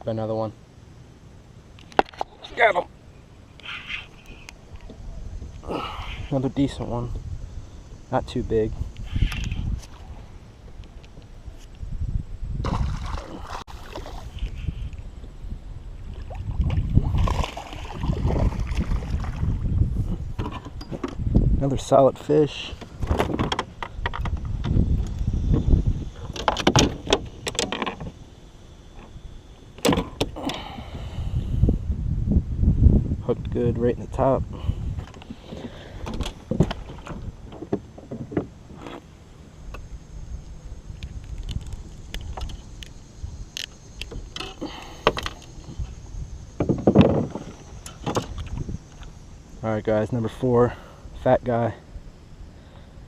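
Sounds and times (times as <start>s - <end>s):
low rumbling: 2.8s - 53.0s
clatter and knocks in a kayak: 20.1s - 21.3s, 22.7s - 24.8s, 26.2s - 28.2s, 35.0s - 39.0s, 46.6s - 49.1s.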